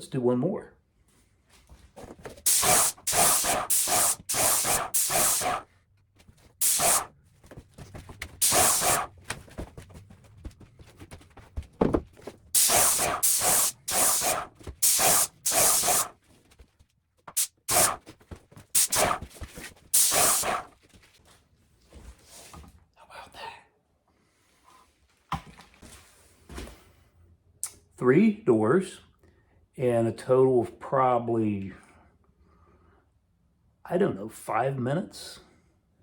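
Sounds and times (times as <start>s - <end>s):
paint sprayer hissing: 2.4s - 5.6s, 6.6s - 7.1s, 8.4s - 9.1s, 12.6s - 16.1s, 17.3s - 18.0s, 18.8s - 19.3s, 19.9s - 20.7s.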